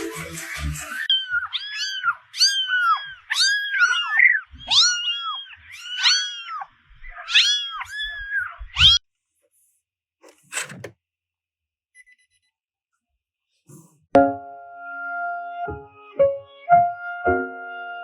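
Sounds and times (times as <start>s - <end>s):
cat meowing: 1.1s - 9.0s.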